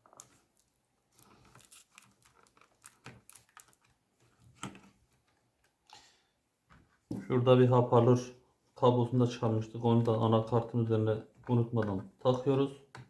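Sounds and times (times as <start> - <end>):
small clicks and taps of laptop parts: 1.2 - 5.8.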